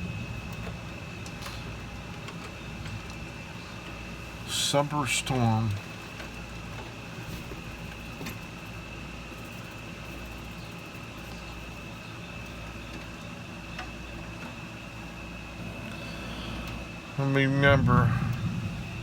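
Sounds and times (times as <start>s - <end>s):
low hum: 15.4s - 19.0s
even hiss: 15.5s - 19.0s.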